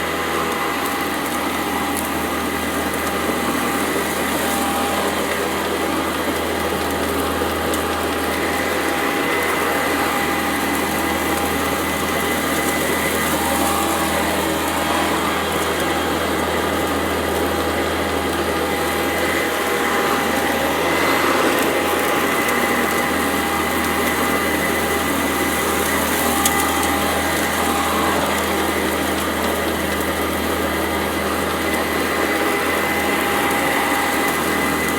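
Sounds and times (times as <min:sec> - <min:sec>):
upright vacuum cleaner whining: 0:00.0 - 0:34.9
vacuum crunching grit: 0:00.0 - 0:34.9.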